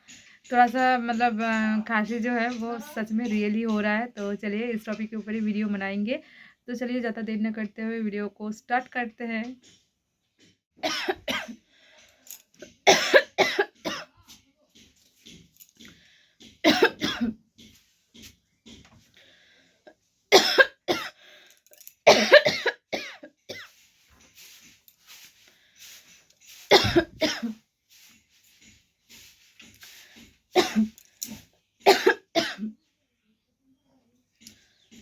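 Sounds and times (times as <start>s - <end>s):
woman coughing: 10.8s - 11.6s, 12.8s - 14.2s, 16.6s - 17.4s, 20.3s - 21.2s, 22.1s - 23.7s, 26.7s - 27.6s, 30.6s - 31.0s, 31.8s - 32.8s.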